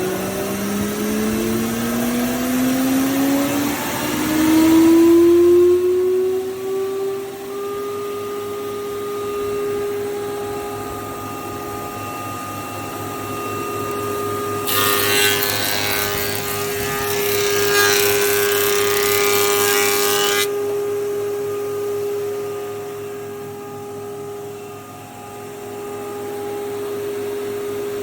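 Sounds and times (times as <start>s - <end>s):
planer knives cutting board: 14.6s - 20.5s
thicknesser humming: 14.6s - 20.5s.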